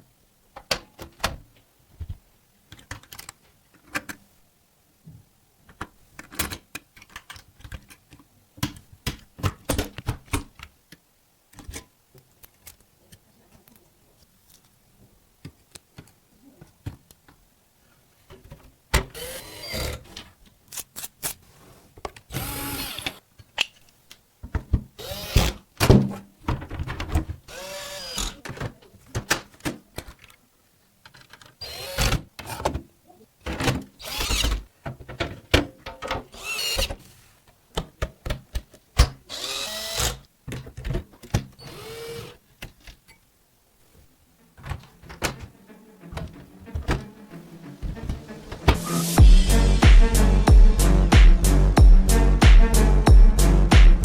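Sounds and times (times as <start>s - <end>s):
electric screwdriver whirring: 19.2s - 20.0s, 22.3s - 23.2s, 25.0s - 25.6s, 27.5s - 28.4s, 31.6s - 32.2s, 34.0s - 34.6s, 36.3s - 36.9s, 39.3s - 40.2s, 41.6s - 42.4s.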